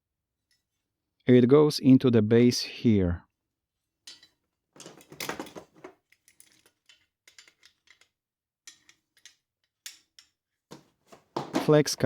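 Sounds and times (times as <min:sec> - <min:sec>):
clicks and knocks of tool parts: 0:04.1 - 0:12.0.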